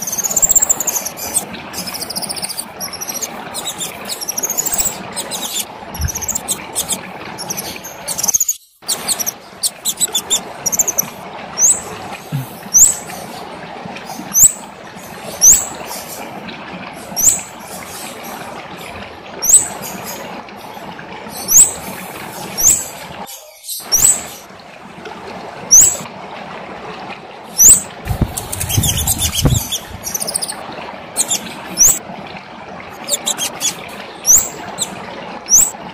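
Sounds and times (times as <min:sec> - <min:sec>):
songbird chirping: 0:00.0 - 0:11.8, 0:27.6 - 0:30.6, 0:31.2 - 0:32.0, 0:33.0 - 0:34.9, 0:35.5 - 0:35.7.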